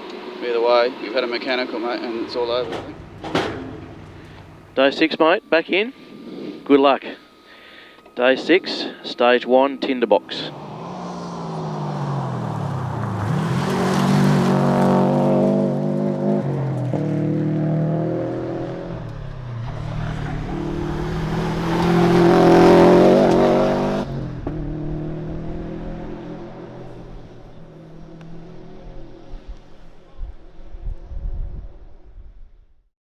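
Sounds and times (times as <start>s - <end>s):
engine revving and gear shifts: 2.2s - 4.9s, 10.3s - 27.3s
car engine accelerating hard: 10.3s - 29.6s.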